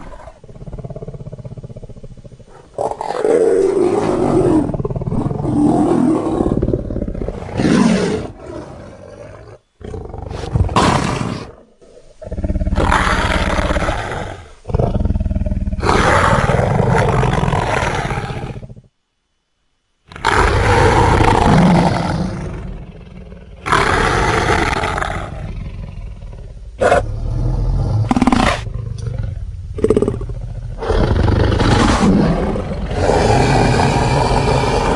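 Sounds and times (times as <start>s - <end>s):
monster roars and growls: 30.8s - 34.9s.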